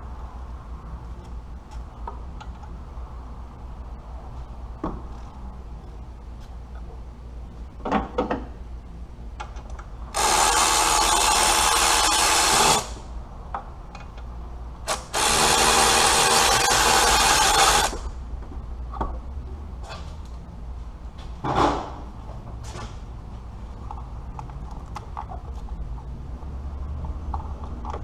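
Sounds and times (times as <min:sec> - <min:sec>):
power tool motor whining: 0:10.2 - 0:13.0, 0:14.9 - 0:18.0.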